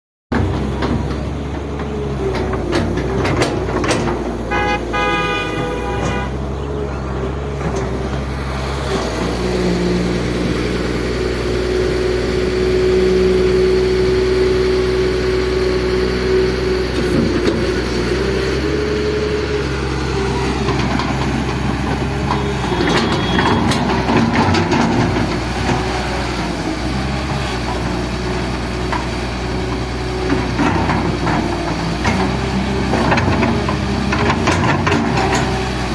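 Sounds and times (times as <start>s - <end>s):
knocks and clanks: 0.3s - 6.4s
excavator diesel engine running: 0.3s - 35.9s
horn-like high tone: 4.4s - 6.4s.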